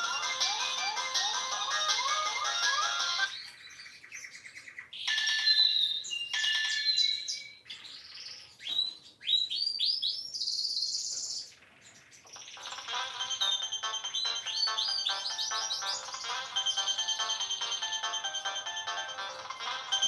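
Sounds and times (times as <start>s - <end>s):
ringtone of bird-like chirps: 0.0s - 9.1s, 11.9s - 20.0s.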